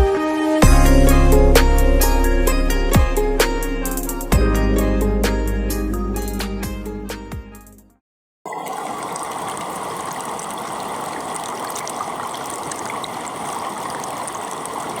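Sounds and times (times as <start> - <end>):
waterfall rushing: 8.5 - 15.0.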